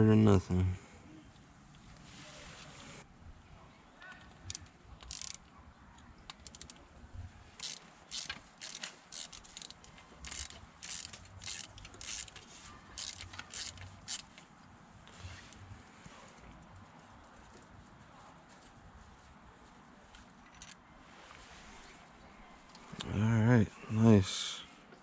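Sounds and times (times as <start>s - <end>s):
metallic clicks of tools: 4.4s - 5.5s, 6.3s - 6.8s, 7.6s - 12.4s
metal parts scraping: 4.5s - 5.4s, 7.6s - 14.4s.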